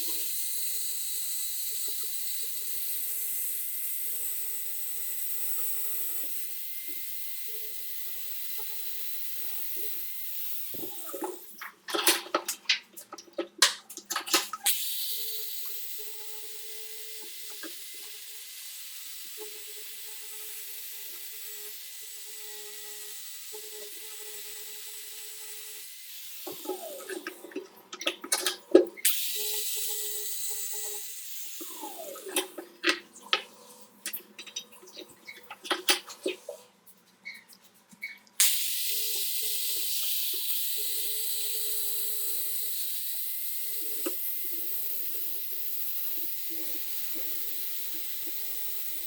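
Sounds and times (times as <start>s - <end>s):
small power tool whining: 0.0s - 11.6s, 14.7s - 27.5s, 29.0s - 33.0s, 38.4s - 49.0s.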